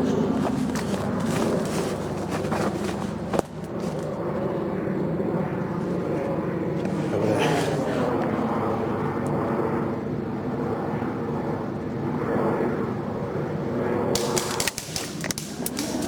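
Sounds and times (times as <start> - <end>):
aircraft engine drone: 0.0 - 16.0
sharp clicks: 14.2 - 16.0.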